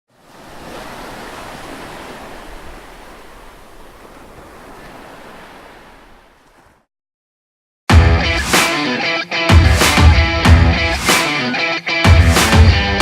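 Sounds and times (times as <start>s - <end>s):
rushing water: 0.1s - 6.9s
wind: 0.1s - 6.9s.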